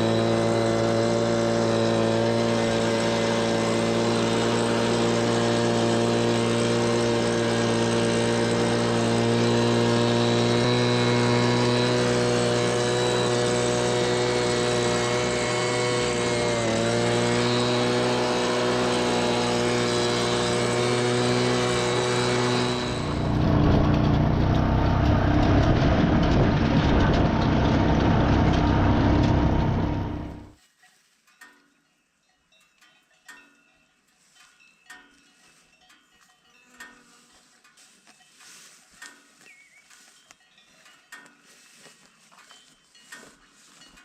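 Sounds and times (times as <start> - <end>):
tractor engine running: 0.0 - 30.6.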